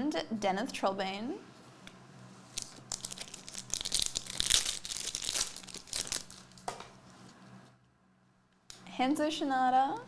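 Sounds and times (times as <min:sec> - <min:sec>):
card packs crinkling and rustling: 0:02.5 - 0:06.7.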